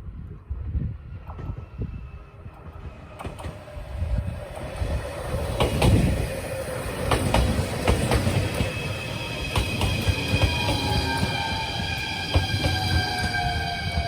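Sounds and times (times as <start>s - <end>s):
train low rumble: 0.0s - 14.0s
train wheels clicking over rail joints: 2.8s - 3.8s, 4.4s - 14.0s
high whining tones: 6.0s - 14.0s.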